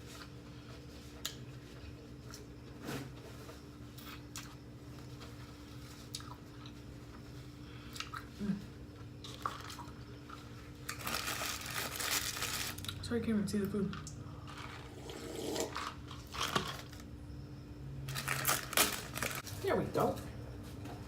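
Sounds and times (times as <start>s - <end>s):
chewing with wet mouth clicks: 6.1s - 6.8s, 7.9s - 8.3s.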